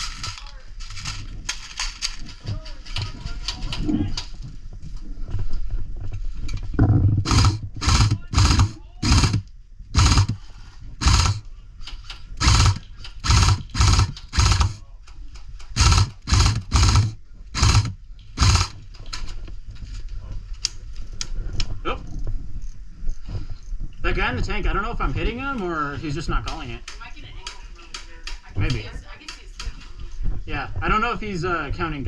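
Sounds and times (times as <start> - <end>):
hard rapid breathing: 10.0 - 11.5.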